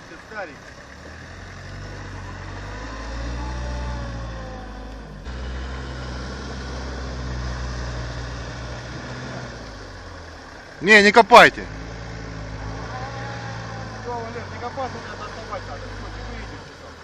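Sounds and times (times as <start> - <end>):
off-road vehicle engine running: 0.0 - 17.0.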